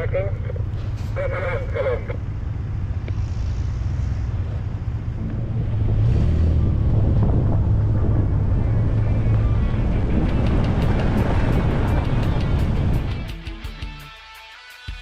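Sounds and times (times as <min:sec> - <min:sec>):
vehicle engine rumble: 0:00.0 - 0:13.7
wind noise: 0:04.4 - 0:13.4.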